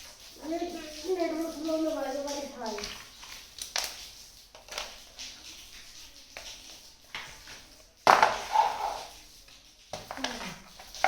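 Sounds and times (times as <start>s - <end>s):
toy kitchen pieces tapping: 8.0s - 9.1s.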